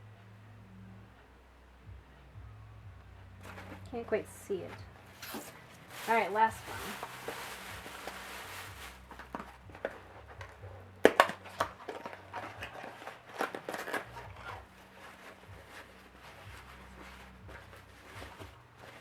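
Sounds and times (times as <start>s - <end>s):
packing material crinkling: 4.6s - 19.0s.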